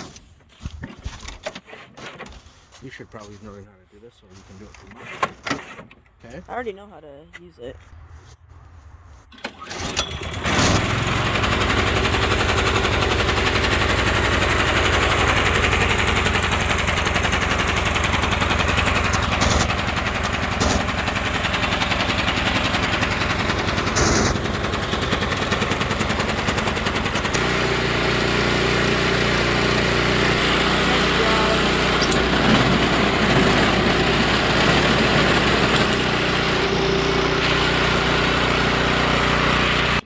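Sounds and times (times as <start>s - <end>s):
small gasoline engine running: 9.4s - 40.0s.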